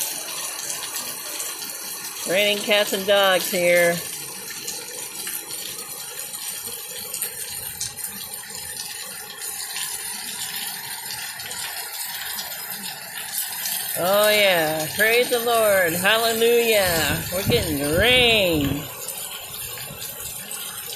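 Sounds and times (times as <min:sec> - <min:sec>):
heavy rain: 0:00.0 - 0:20.9.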